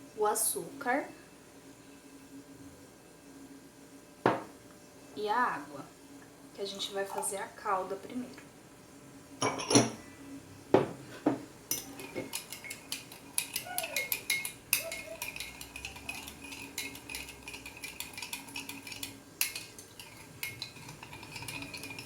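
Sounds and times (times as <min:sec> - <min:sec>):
spoon clinking in glass mug: 0:09.4 - 0:10.0, 0:11.7 - 0:22.0.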